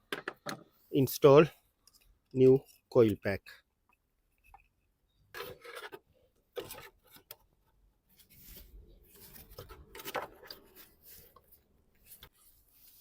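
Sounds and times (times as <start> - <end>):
plastic rubbing and scraping: 5.3 - 13.0.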